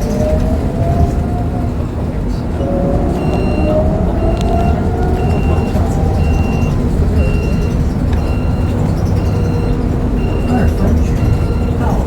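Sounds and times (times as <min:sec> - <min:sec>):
bus engine rumbling: 0:00.0 - 0:12.0
high electronic beep: 0:03.2 - 0:12.0.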